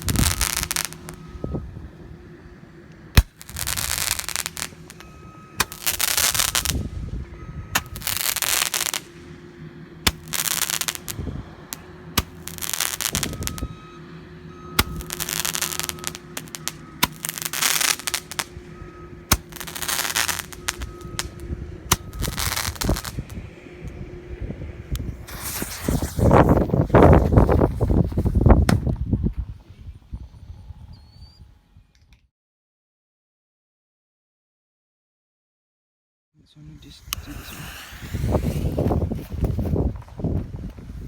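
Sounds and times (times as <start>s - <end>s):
roman candle pops and crackling: 14.8s - 18.5s, 19.3s - 21.3s.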